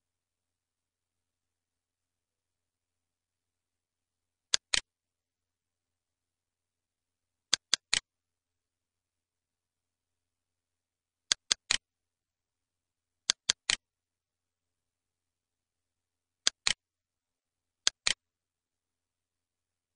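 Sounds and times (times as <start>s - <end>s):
computer mouse clicks: 4.5s - 4.9s, 7.5s - 8.1s, 11.3s - 11.8s, 13.3s - 13.8s, 16.4s - 16.8s, 17.8s - 18.2s.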